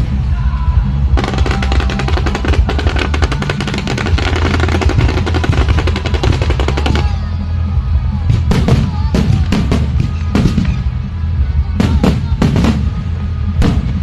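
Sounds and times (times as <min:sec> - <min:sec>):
music: 0:00.0 - 0:14.0
fireworks bangs: 0:01.2 - 0:07.3, 0:08.3 - 0:11.0, 0:11.8 - 0:14.0.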